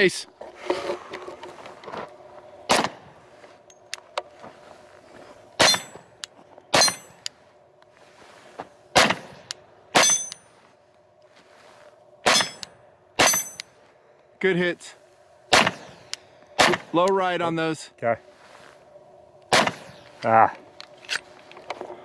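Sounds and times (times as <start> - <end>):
pistol shots: 15.5 - 15.9, 16.6 - 16.9, 19.5 - 19.9.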